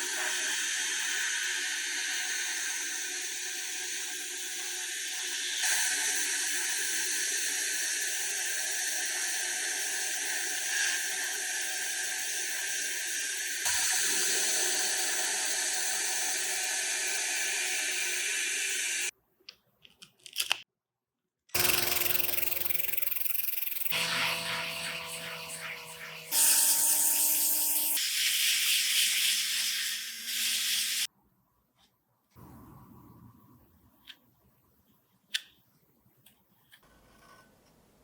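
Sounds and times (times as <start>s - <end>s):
power tool running: 21.6s - 28.0s.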